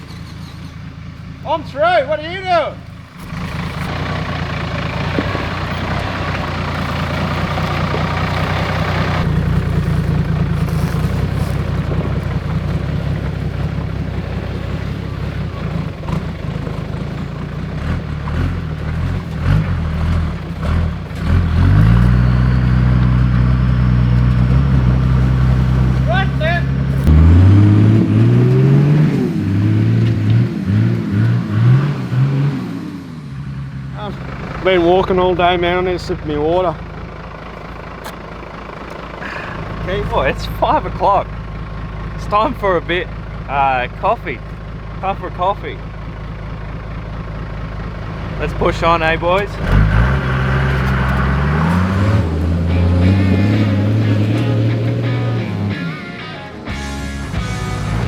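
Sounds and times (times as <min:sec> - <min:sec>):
engine running at low revs: 0:00.0 - 0:58.0.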